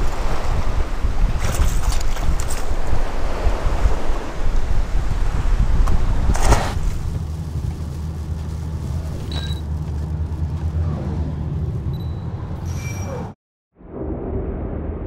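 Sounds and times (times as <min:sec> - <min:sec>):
road or water noise: 0:00.0 - 0:13.0
engine humming steadily: 0:06.3 - 0:13.0.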